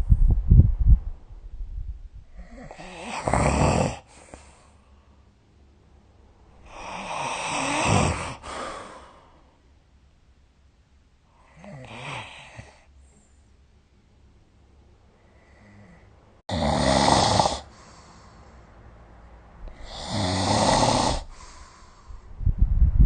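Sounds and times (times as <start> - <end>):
person snoring: 2.3 - 4.5, 6.6 - 9.3, 11.4 - 12.9, 15.4 - 18.2, 19.7 - 22.0.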